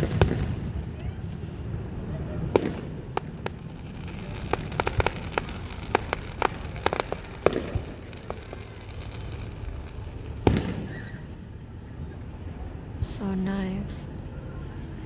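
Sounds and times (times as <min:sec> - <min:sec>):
fireworks cracks and pops: 0:00.0 - 0:00.7, 0:01.8 - 0:11.8
firework booms: 0:00.0 - 0:12.1.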